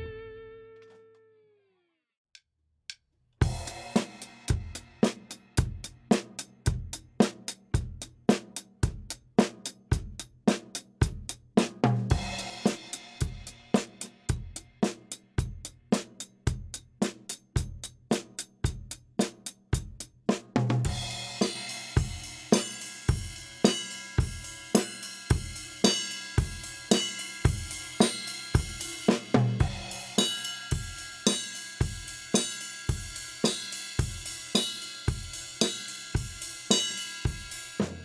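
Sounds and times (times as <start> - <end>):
cymbals washing: 21.4 - 38.0.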